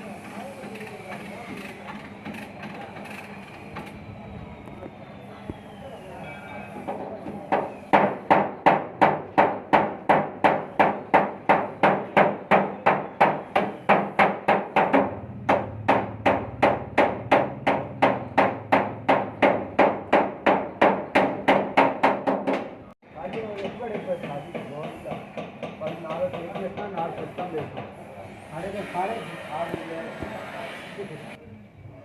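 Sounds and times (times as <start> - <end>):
hammer beating sheet metal: 6.9 - 28.0.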